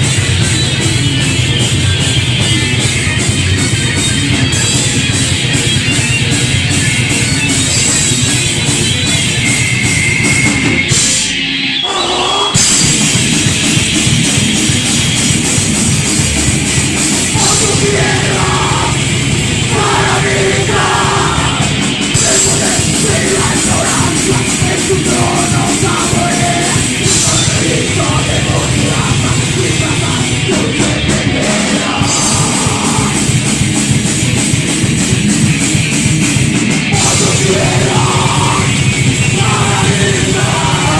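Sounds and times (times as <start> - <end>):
bass: 0.0 - 40.9
distorted electric guitars: 0.0 - 40.9
drums: 0.0 - 40.9
shouted vocals: 11.8 - 12.6, 17.3 - 33.3, 37.0 - 40.9.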